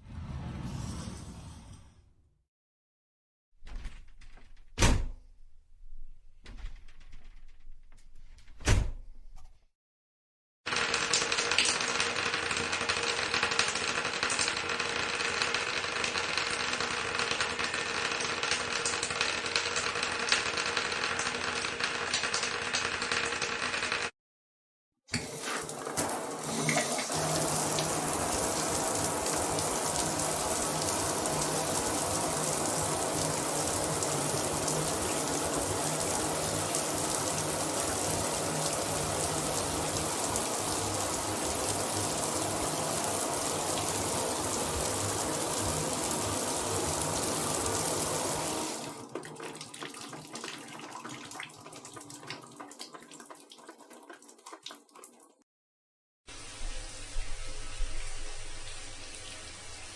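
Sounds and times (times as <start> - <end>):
shower water spraying: 25.3 - 49.0, 56.3 - 59.9.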